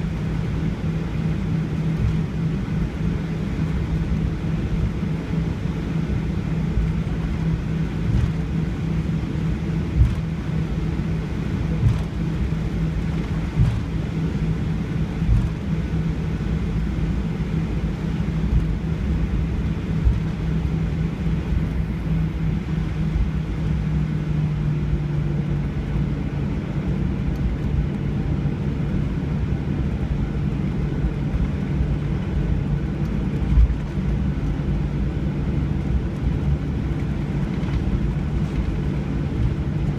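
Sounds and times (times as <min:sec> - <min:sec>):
airliner engines droning: 0:00.0 - 0:39.9
low thumps through airframe: 0:01.8 - 0:02.6, 0:06.6 - 0:15.9, 0:18.4 - 0:22.0, 0:35.8 - 0:39.9.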